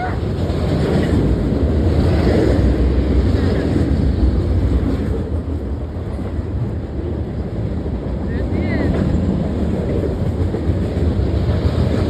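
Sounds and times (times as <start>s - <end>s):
train rumbling over tracks: 0.0s - 12.0s.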